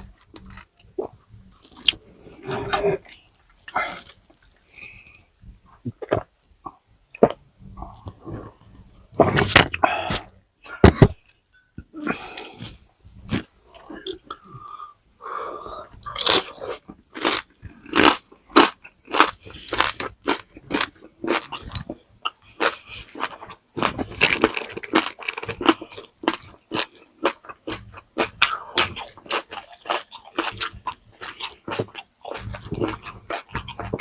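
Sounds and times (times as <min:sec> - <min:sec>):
crunching of crispy food: 0:16.1 - 0:34.0.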